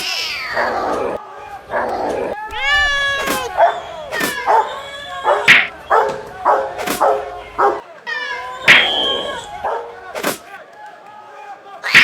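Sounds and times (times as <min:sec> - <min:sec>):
dog barking: 0:00.5 - 0:00.9, 0:03.3 - 0:07.8, 0:08.7 - 0:10.0
dog drawn-out cry: 0:01.7 - 0:10.0
sharp cracks: 0:02.0 - 0:04.5, 0:05.4 - 0:07.3, 0:10.1 - 0:10.6.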